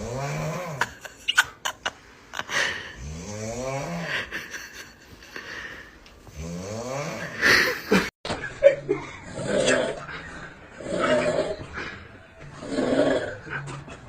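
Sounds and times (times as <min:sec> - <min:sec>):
person snoring: 0:00.0 - 0:01.0, 0:02.5 - 0:04.3, 0:05.4 - 0:08.0.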